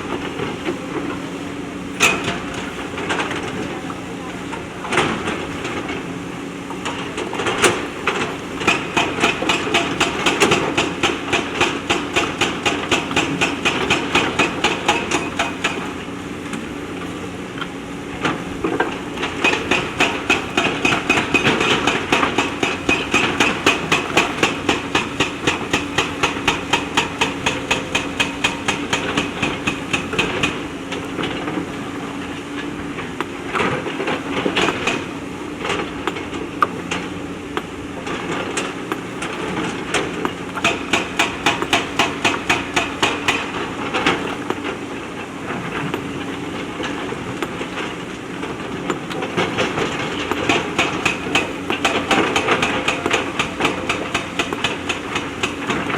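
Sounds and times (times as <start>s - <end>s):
diesel engine running: 0.0s - 55.9s
rapid even hammering: 19.2s - 30.7s, 40.5s - 43.6s, 50.3s - 55.9s.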